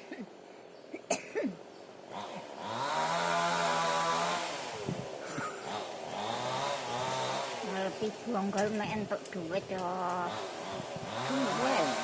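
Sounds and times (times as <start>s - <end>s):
person coughing: 1.0s - 1.6s
small engine running: 2.0s - 12.0s.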